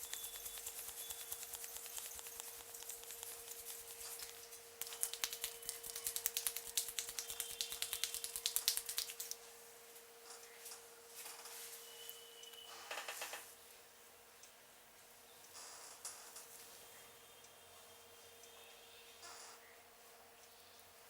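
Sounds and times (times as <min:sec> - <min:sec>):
hands patting on a head: 0:00.0 - 0:09.4.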